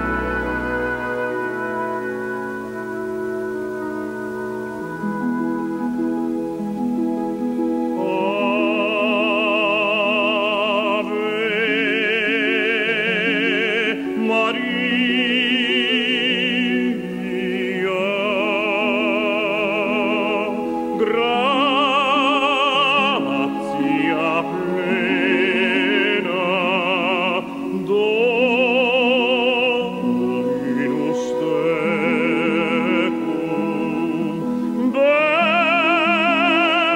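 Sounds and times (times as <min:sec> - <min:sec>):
sustained instrumental accompaniment: 0:00.0 - 0:36.9
operatic solo voice singing: 0:07.9 - 0:36.9.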